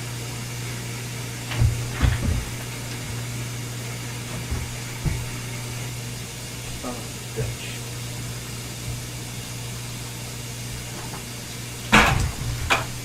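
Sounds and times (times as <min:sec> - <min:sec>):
low mechanical hum: 0:00.0 - 0:13.0
dull knocks: 0:01.5 - 0:03.3, 0:04.2 - 0:05.6.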